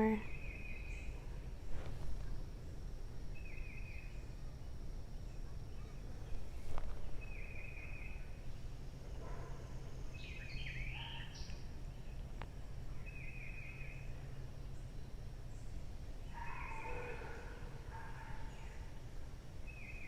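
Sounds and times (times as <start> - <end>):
steady low hum: 0.0 - 20.0
birds calling: 5.2 - 18.9.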